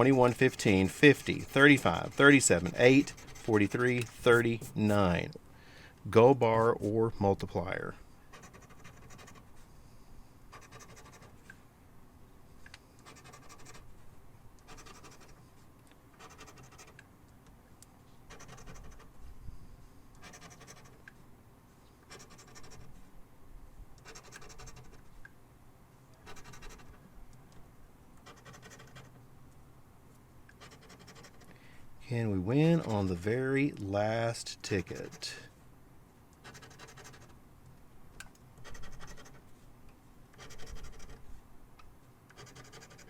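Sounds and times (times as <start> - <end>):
lottery ticket scratching: 0.0 - 5.4, 6.1 - 9.5, 20.2 - 21.0, 28.2 - 29.1, 32.2 - 35.5, 36.4 - 37.3, 42.4 - 43.0.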